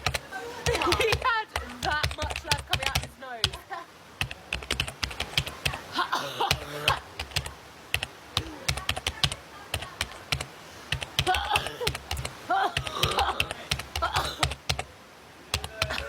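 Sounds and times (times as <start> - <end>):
rapid irregular clicking: 0.0 - 14.9, 15.5 - 16.0.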